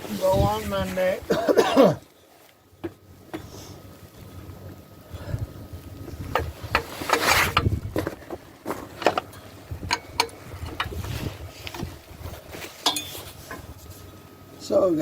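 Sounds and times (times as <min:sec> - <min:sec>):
hand tools clanking on metal: 0:08.7 - 0:11.0, 0:12.7 - 0:13.7.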